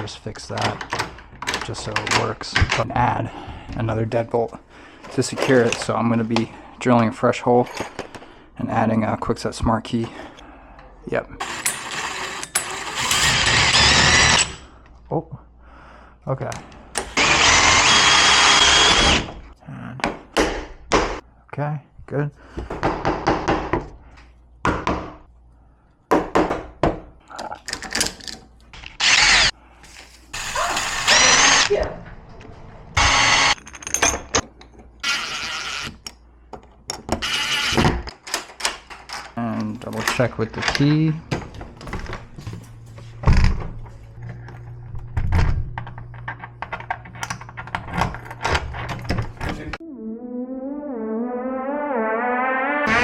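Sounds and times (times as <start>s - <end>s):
power drill spinning up: 11.4s - 14.6s, 17.2s - 19.3s, 29.0s - 29.5s, 30.3s - 31.7s, 33.0s - 33.6s, 35.0s - 35.9s, 37.2s - 37.8s
low hum: 41.7s - 48.2s.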